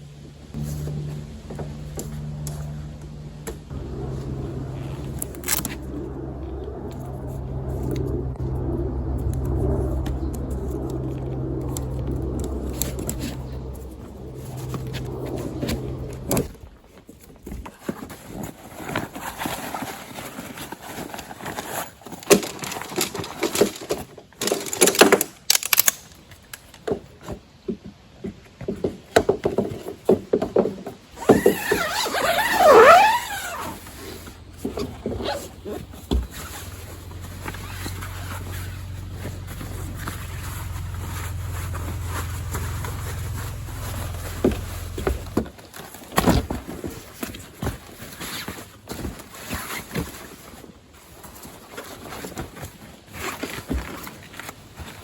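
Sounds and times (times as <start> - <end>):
low engine-like hum: 0.0 - 16.7, 31.9 - 45.6.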